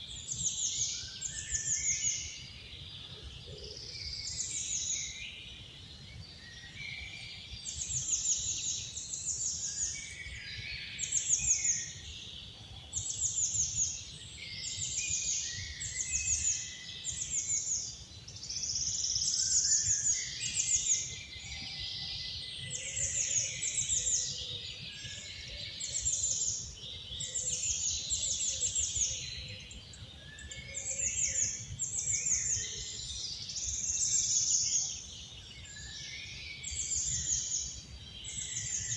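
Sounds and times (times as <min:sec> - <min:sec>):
songbirds trilling: 0:00.0 - 0:38.9.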